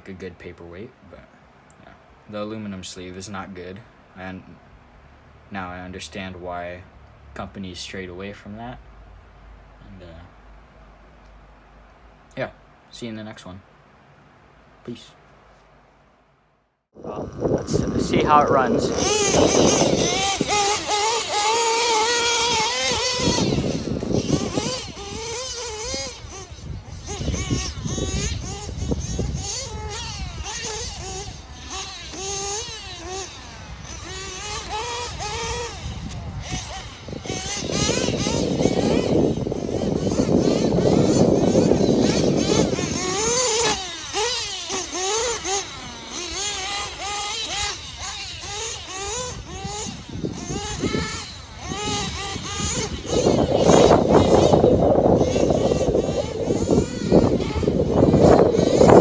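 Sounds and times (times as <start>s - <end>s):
small nitro engine revving: 17.0s - 59.0s.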